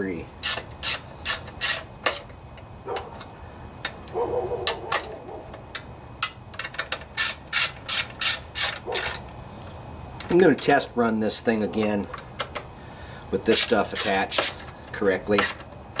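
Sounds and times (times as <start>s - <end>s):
ratchet wrench clicking: 0.4s - 2.2s, 5.7s - 9.3s, 13.5s - 14.7s, 15.4s - 15.7s.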